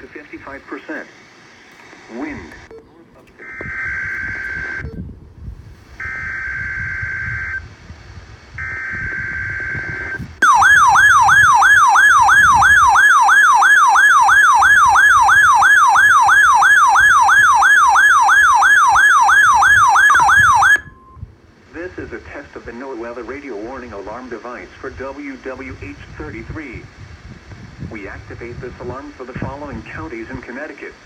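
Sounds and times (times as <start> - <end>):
electronic siren warbling: 3.4 - 4.9, 6.0 - 7.7, 8.6 - 21.2.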